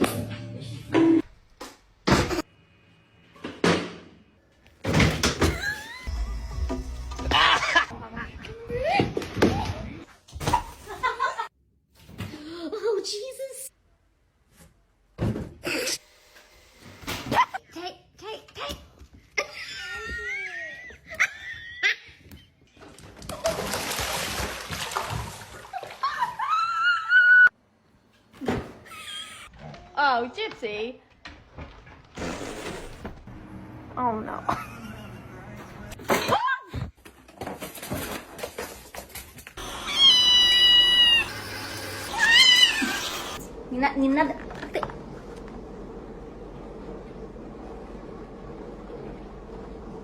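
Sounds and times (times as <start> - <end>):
water splashing: 23.3 - 26.4
high-pitched wavering cries: 39.6 - 43.4.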